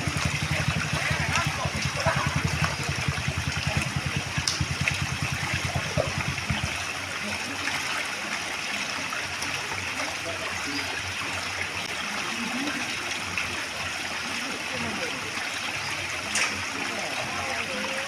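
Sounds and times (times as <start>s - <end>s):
low fast rhythmic throb: 0.0s - 7.1s
running water: 0.0s - 18.0s.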